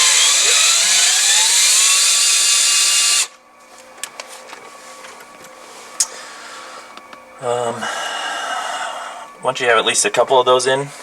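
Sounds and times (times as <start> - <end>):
screw gun motor whine: 0.0 - 3.4.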